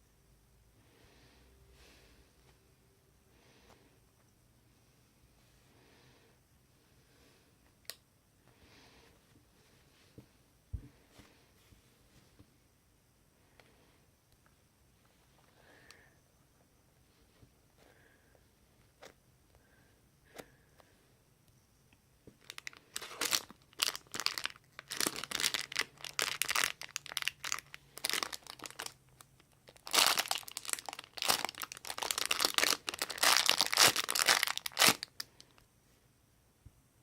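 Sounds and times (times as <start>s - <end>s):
plastic wrapping crinkling: 22.4s - 35.5s.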